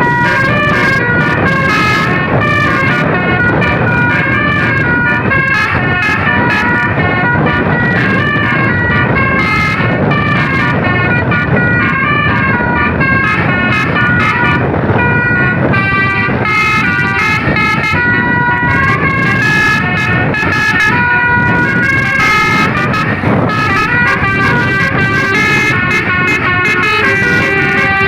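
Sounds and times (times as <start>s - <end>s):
engine and road noise: 0.0s - 28.0s
musical bus horn playing a tune: 0.0s - 28.0s.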